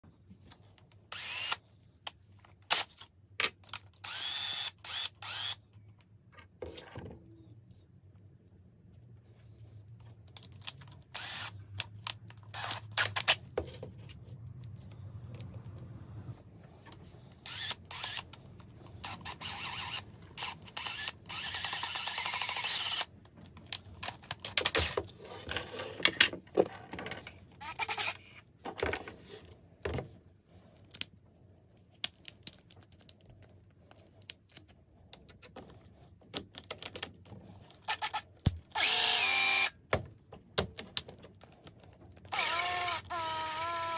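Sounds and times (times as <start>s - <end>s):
small drill running: 1.1s - 1.6s, 4.0s - 5.6s, 11.1s - 11.6s, 12.5s - 13.3s, 17.4s - 18.3s, 19.0s - 23.1s, 37.9s - 39.8s, 42.3s - 43.9s.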